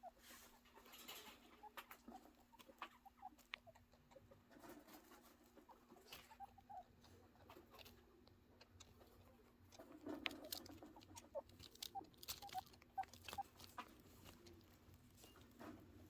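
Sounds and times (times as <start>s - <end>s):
small feet pattering: 7.5s - 16.0s.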